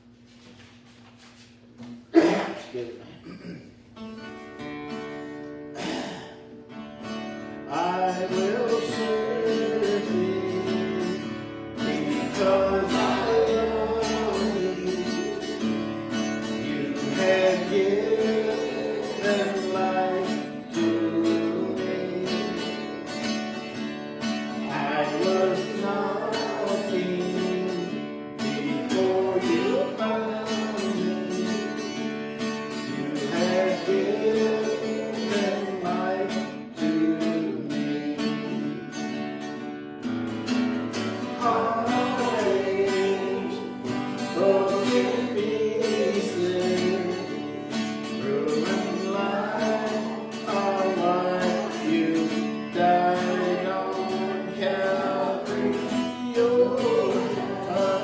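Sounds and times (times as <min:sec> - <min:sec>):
hymn singing: 0:05.8 - 0:39.6, 0:40.7 - 0:58.0.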